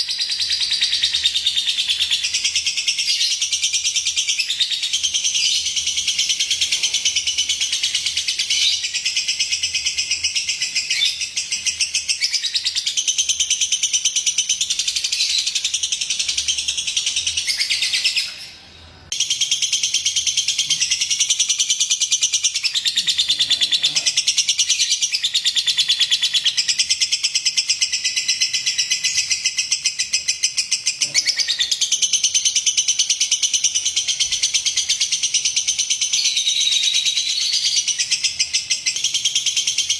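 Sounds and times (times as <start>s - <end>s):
lovebird chattering trill: 19.1s - 39.9s.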